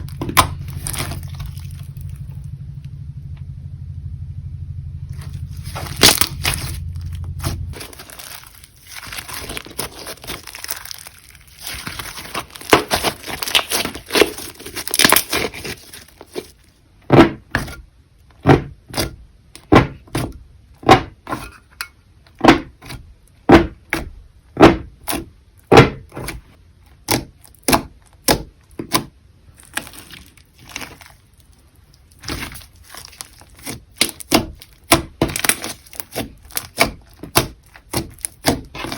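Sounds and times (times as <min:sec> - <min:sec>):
slime crackling and popping: 0:00.0 - 0:02.9, 0:05.1 - 0:16.6, 0:24.6 - 0:38.9
low steady hum: 0:00.0 - 0:38.9.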